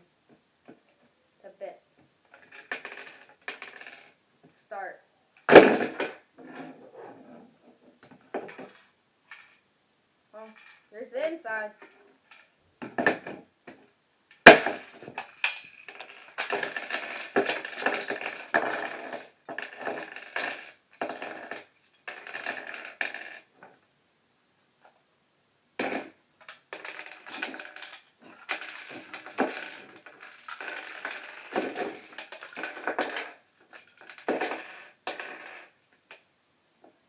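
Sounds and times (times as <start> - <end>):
plastic bricks clattering: 2.3 - 4.2, 11.8 - 23.5, 25.8 - 36.2
plastic brick cracking: 5.4 - 6.2, 12.8 - 23.4, 25.8 - 35.3.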